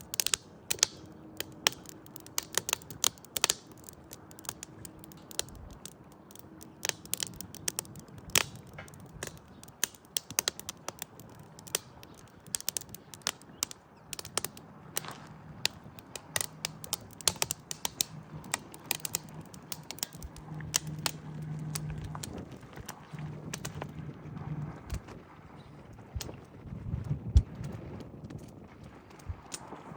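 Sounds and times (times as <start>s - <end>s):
sharp clicks and taps: 0.0s - 23.8s
low steady hum: 0.0s - 29.9s.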